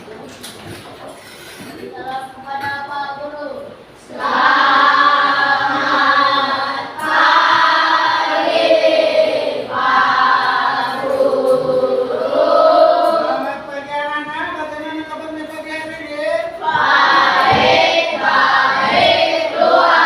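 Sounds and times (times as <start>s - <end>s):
group singing in unison: 4.1s - 13.7s, 16.6s - 20.0s.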